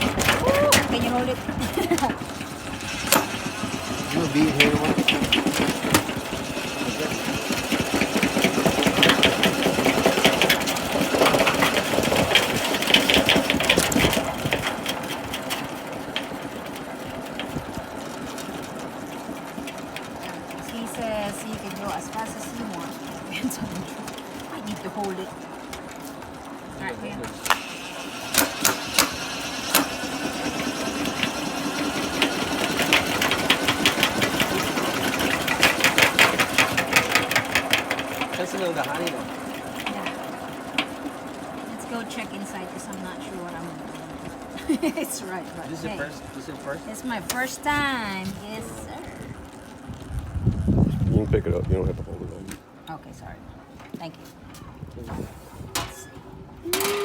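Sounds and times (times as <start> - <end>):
drill spinning extractor basket rattling: 0.0 - 52.8, 55.2 - 57.0
drill motor hum: 0.9 - 10.4, 26.9 - 37.4.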